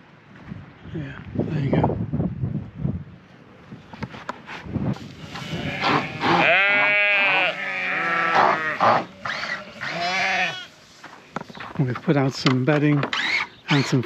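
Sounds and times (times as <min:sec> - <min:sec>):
sheep bleating: 0:05.2 - 0:10.8.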